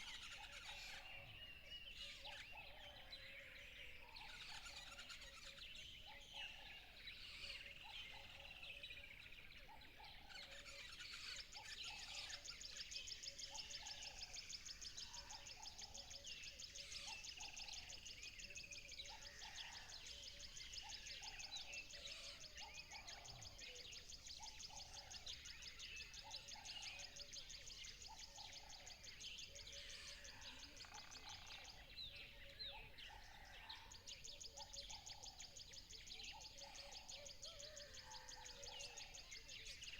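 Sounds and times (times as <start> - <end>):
birds chirping and singing: 0.0 - 39.9.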